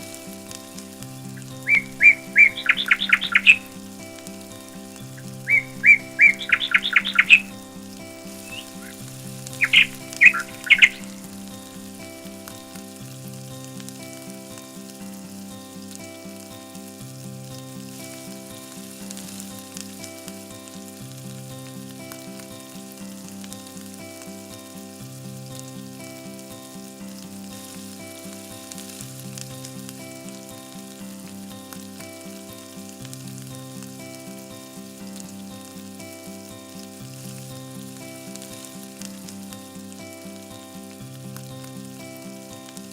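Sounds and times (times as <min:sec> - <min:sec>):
chicken sizzling in a pot: 0:00.0 - 0:42.9
slow sustained background music: 0:00.0 - 0:42.9
bird chirps: 0:01.4 - 0:03.8, 0:04.9 - 0:07.6, 0:08.2 - 0:11.3.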